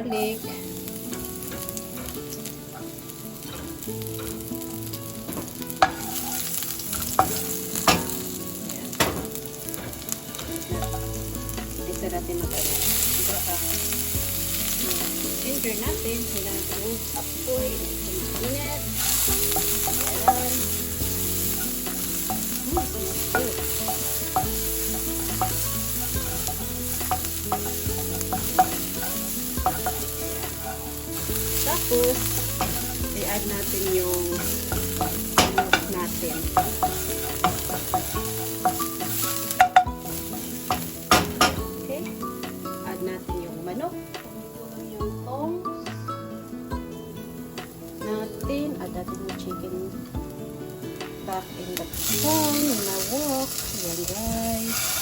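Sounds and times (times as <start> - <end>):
garlic sizzling in hot oil: 0.0 - 55.0
utensil knocking against pan: 5.2 - 8.3, 9.0 - 11.2, 15.6 - 41.8.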